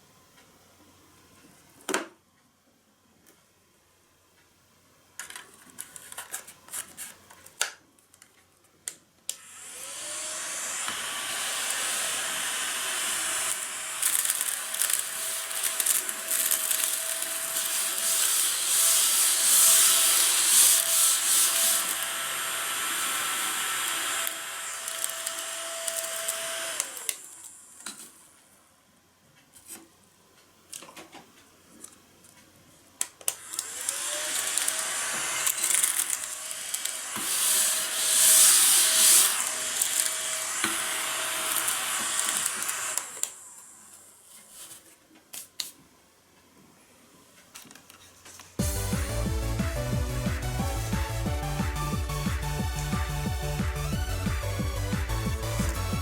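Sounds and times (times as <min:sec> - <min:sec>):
small vacuum cleaner motor whining: 0:09.4 - 0:28.0, 0:33.3 - 0:44.2.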